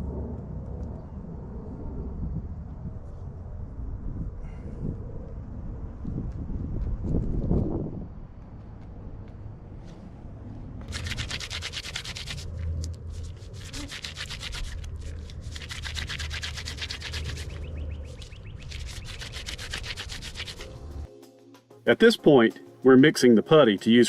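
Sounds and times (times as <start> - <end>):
putty scraping and rubbing: 10.8 - 21.1.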